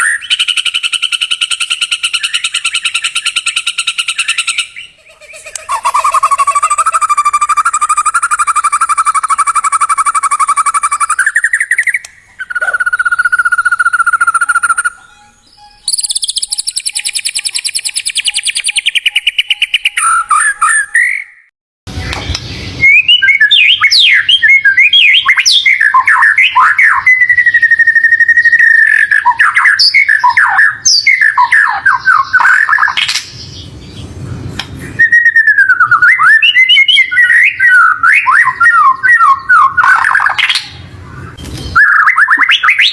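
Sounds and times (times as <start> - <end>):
bird whistles and chirps: 0.0 - 33.6, 34.8 - 40.8, 41.4 - 42.9
buzzy rattling bird trills: 0.3 - 19.5.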